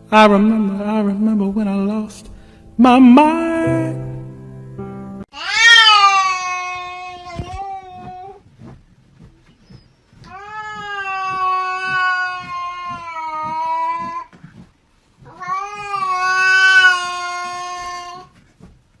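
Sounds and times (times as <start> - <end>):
cat yowling: 5.4 - 8.4, 10.3 - 14.3, 15.3 - 18.3.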